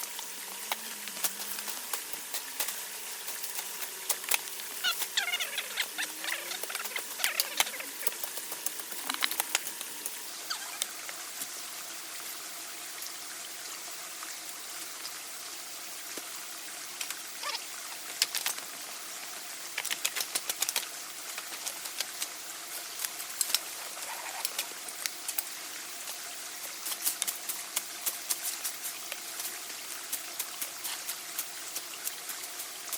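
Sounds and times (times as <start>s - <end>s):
steady background hiss: 0.0s - 32.9s.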